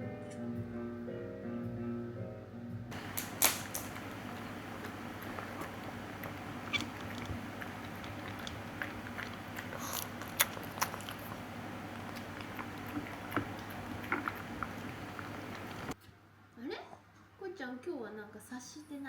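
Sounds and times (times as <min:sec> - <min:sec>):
light clicks and crunches: 0:02.9 - 0:16.0
low room hum: 0:02.9 - 0:17.4.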